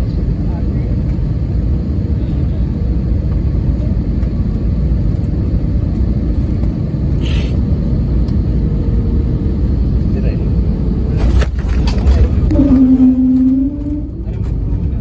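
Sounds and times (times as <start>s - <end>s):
airliner cabin rumble: 0.0s - 15.0s
short hiss: 7.2s - 7.6s.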